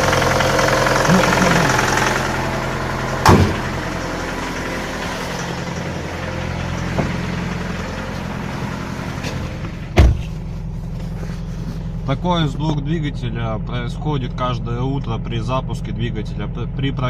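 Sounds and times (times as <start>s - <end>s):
engine knock: 0.0s - 10.3s
pickup engine idling: 0.0s - 17.0s
loud short thump: 3.2s - 3.7s, 9.9s - 10.4s.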